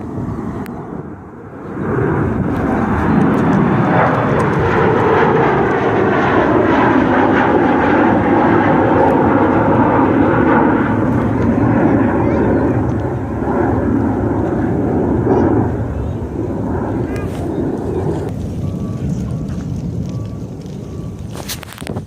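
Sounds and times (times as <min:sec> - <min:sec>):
jet engines passing close: 0:00.0 - 0:22.0
faint whining tones: 0:09.0 - 0:22.0.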